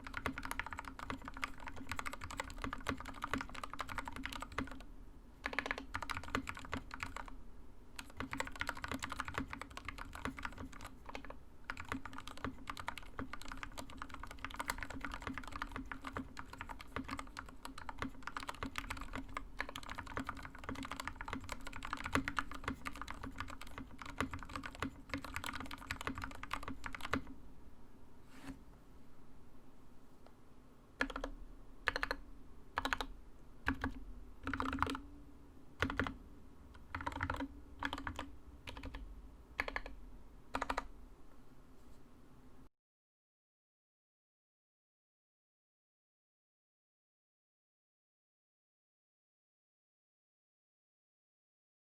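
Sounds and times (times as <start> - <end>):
fast typing on mechanical keyboard: 0.0 - 7.4, 8.0 - 27.3, 31.0 - 32.2, 32.8 - 33.1, 33.7 - 35.0, 35.8 - 36.2, 36.8 - 39.0, 39.6 - 40.9.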